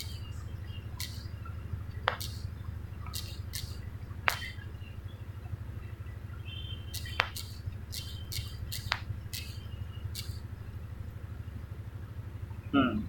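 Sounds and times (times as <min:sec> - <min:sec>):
taps on smartphone sensor: 0:00.0 - 0:04.7, 0:06.9 - 0:10.5
steady low hum: 0:00.0 - 0:13.0
quick falling chirps: 0:02.0 - 0:04.7, 0:06.8 - 0:10.5.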